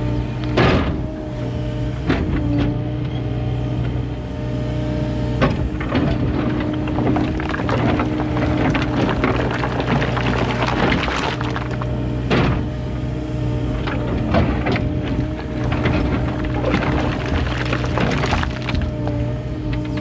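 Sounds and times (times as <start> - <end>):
diesel engine running: 0.0 - 20.0
rock and shale clattering: 5.7 - 12.8, 13.8 - 20.0.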